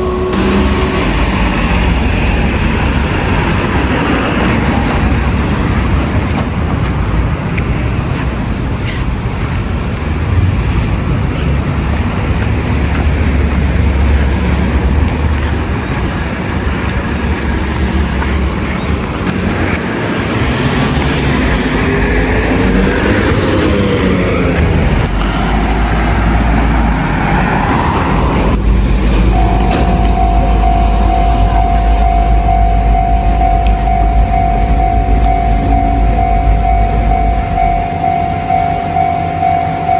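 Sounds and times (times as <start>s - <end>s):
steady high tone: 0.0s - 3.9s, 25.0s - 39.9s
train motor whine: 0.0s - 4.6s, 25.1s - 39.9s
train rumbling: 0.0s - 39.9s.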